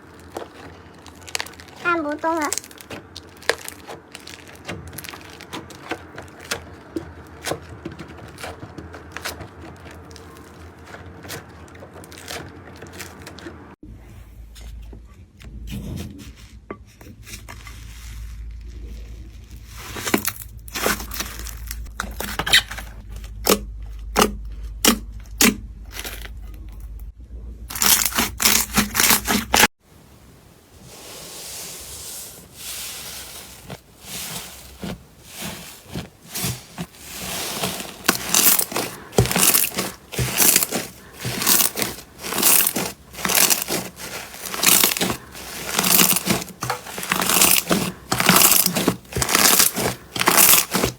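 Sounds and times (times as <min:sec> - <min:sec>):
slime popping and crackling: 0:00.0 - 0:13.4, 0:27.7 - 0:29.7, 0:34.6 - 0:50.9
low hum: 0:22.8 - 0:27.8.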